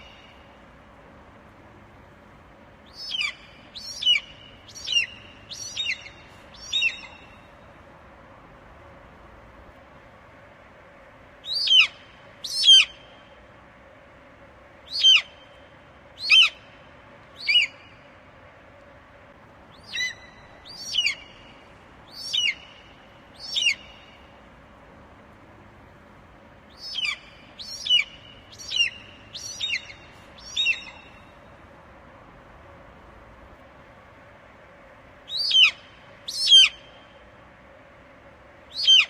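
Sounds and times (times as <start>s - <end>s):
eagle calling: 2.9s - 7.4s, 19.8s - 21.5s, 22.1s - 22.8s, 23.4s - 24.1s, 26.7s - 31.2s, 35.3s - 36.9s, 38.8s - 39.0s.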